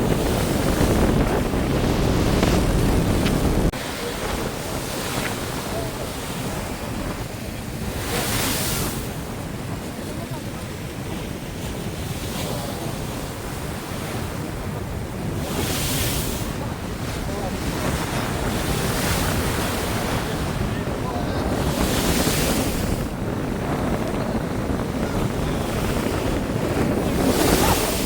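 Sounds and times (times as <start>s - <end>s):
sea waves breaking on shore: 0.0s - 28.0s
wind buffeting microphone: 0.0s - 28.0s.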